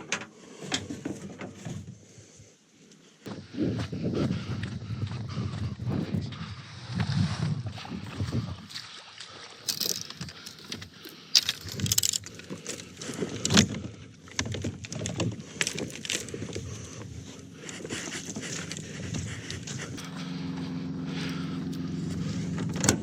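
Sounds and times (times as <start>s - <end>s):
clatter of gear being handled: 9.7s - 17.0s
keys jingling: 11.4s - 12.4s
vehicle engine idling: 15.6s - 23.0s.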